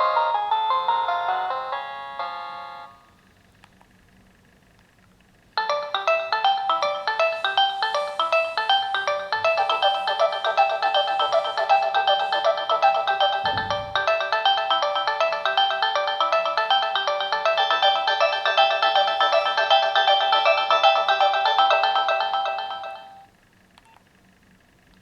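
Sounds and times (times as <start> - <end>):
polyphonic ringtone melody: 0.0 - 3.0, 5.6 - 23.3
low thump: 13.4 - 14.2.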